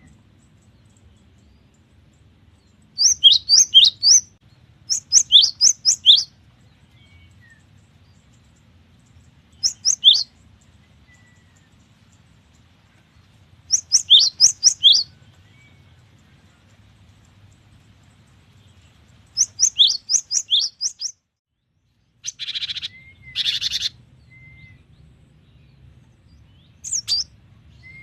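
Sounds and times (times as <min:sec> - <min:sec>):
bird singing high sharp notes: 0:03.0 - 0:06.3, 0:09.6 - 0:10.3, 0:13.7 - 0:15.1, 0:19.4 - 0:21.1, 0:26.8 - 0:28.0.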